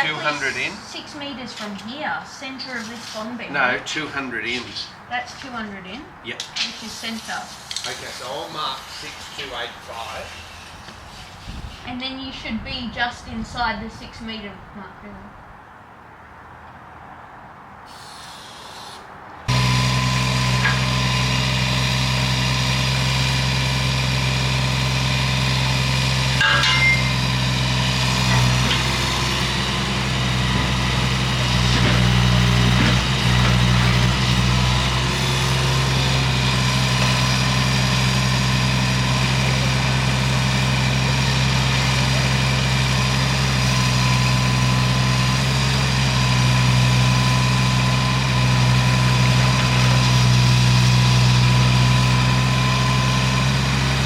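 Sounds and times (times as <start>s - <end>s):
engine running steadily: 19.5s - 54.0s.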